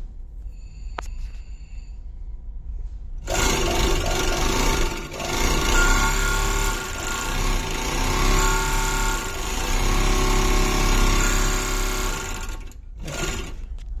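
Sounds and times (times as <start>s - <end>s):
overlock sewing machine whine: 3.2s - 13.8s.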